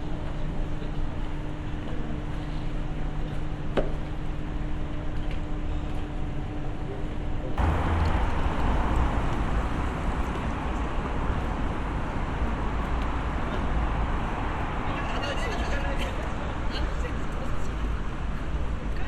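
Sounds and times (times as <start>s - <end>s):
traffic rumble: 7.5s - 19.0s.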